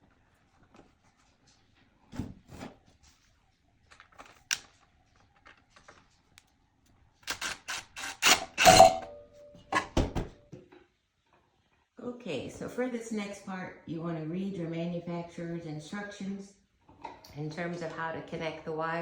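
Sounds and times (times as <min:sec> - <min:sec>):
metal brackets clicking and knocking: 0:07.3 - 0:10.0.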